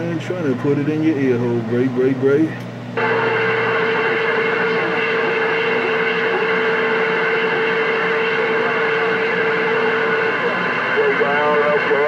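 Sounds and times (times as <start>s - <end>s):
radio static: 3.0s - 12.0s.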